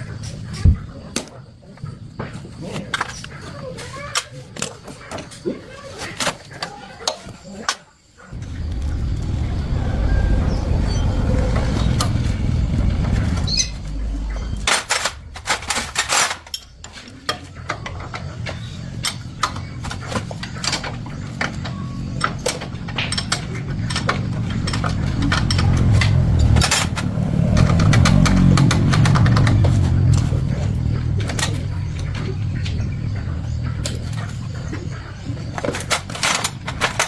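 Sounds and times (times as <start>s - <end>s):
motorcycle engine low rumble: 8.3s - 36.8s.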